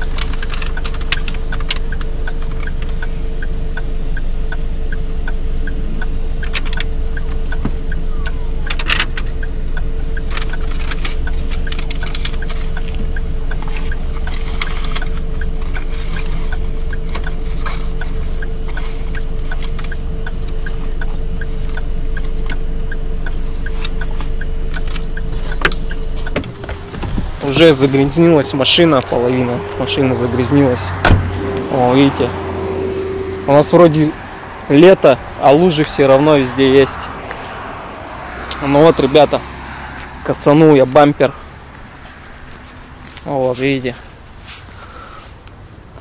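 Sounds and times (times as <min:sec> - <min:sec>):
light even ticking: 0:00.0 - 0:26.6
car engine idling: 0:00.0 - 0:46.0.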